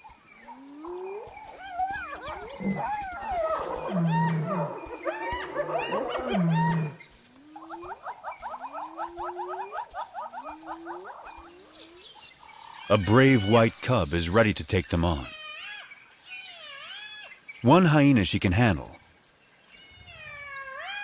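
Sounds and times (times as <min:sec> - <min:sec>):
hyenas giggling and squealing: 0:00.8 - 0:07.0, 0:07.6 - 0:11.5
short low hyena calls: 0:01.8 - 0:07.0.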